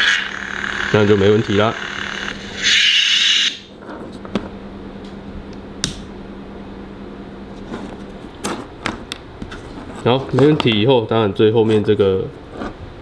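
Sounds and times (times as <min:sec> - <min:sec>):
speaker hissing sound effect: 0:00.0 - 0:03.7
steady low hum: 0:00.0 - 0:13.0
handling clicks: 0:05.8 - 0:06.1.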